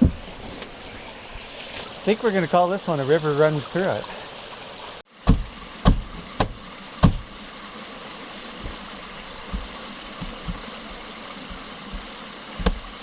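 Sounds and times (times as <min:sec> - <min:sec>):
creek rushing: 0:00.0 - 0:13.0
sharp knocks on hard surface: 0:05.3 - 0:07.3, 0:11.5 - 0:12.9.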